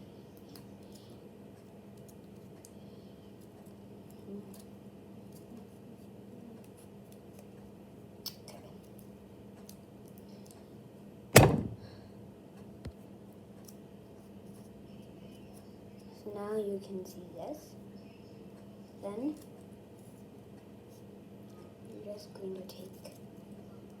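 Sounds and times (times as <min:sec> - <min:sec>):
sharp loud knock: 0:11.4 - 0:11.9
faint handling sounds: 0:17.8 - 0:24.0.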